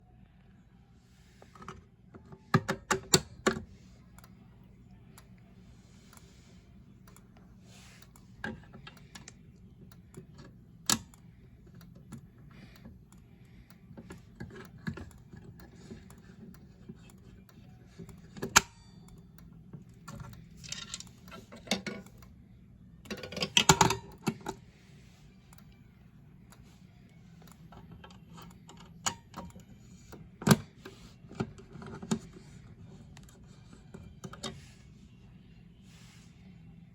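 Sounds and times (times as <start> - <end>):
faint steady hum: 0.0 - 36.9
plastic and metal clicks: 8.0 - 22.3.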